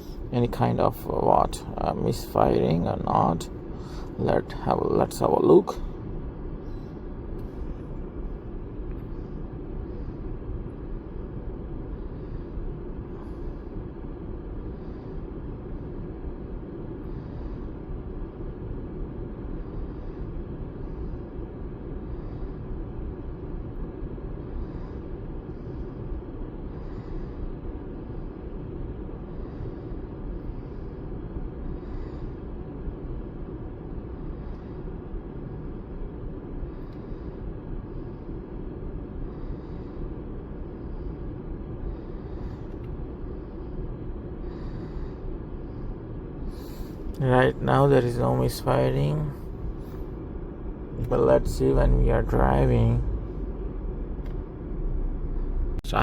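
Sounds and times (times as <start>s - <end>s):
car engine running: 50.8s - 56.0s.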